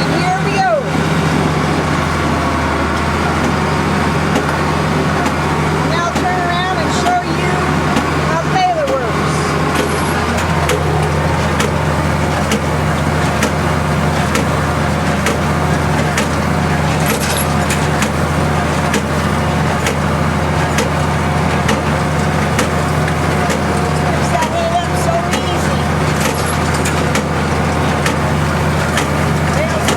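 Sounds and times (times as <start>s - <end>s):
tractor engine running: 0.0s - 29.9s.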